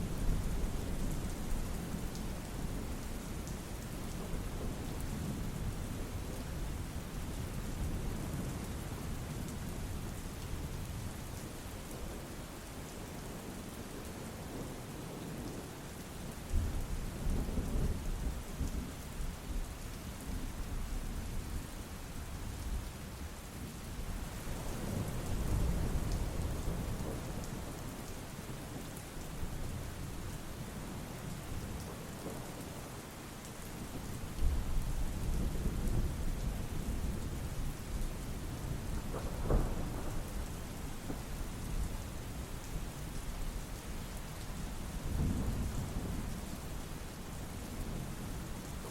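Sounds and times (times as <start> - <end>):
steady rain falling: 0.0 - 48.9
thunder rumbling: 34.5 - 40.5.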